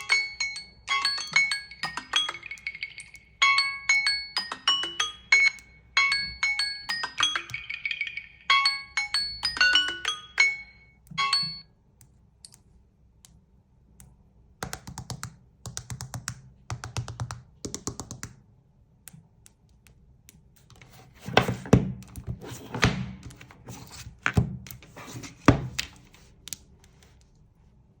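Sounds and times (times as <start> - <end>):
smartphone ringtone chimes: 0.0 - 11.7.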